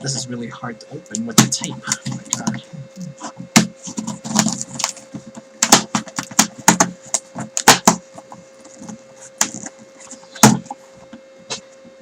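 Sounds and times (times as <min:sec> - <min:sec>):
faint hum: 0:00.0 - 0:12.0
tape tearing: 0:03.8 - 0:10.8.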